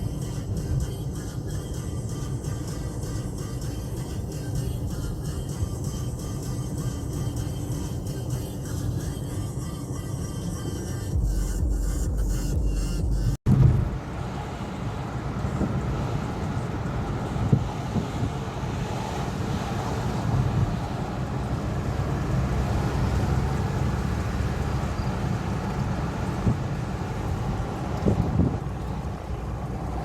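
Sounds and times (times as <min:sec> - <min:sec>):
vehicle rumble: 0:00.0 - 0:30.0
wind buffeting microphone: 0:15.2 - 0:23.1, 0:24.4 - 0:30.0.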